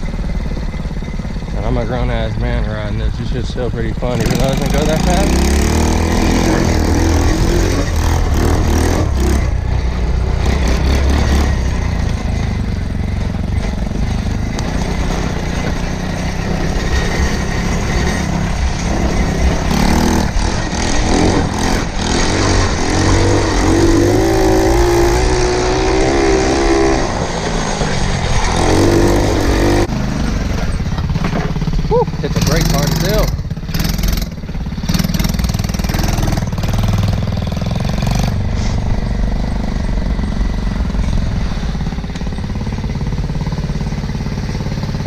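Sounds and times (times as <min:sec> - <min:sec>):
quad bike engine revving: 0:00.0 - 0:45.0.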